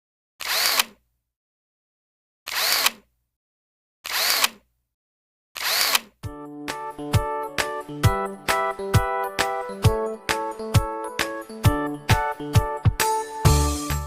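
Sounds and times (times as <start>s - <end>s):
mechanical sound effect with click: 0.4s - 1.0s, 2.5s - 3.0s, 4.1s - 4.6s, 5.6s - 6.2s
music with sustained notes: 6.3s - 14.0s.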